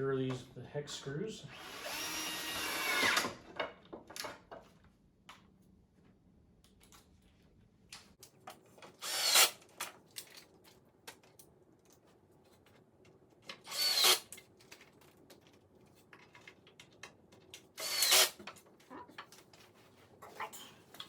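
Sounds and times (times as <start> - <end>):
cordless drill driving screws: 1.5 - 3.5, 9.0 - 9.6, 13.6 - 14.3, 17.8 - 18.4.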